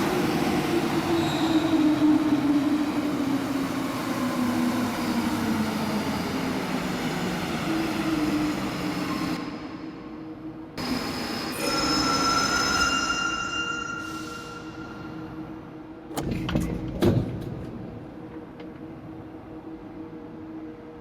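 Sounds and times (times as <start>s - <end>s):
metro train braking: 0.0s - 16.1s.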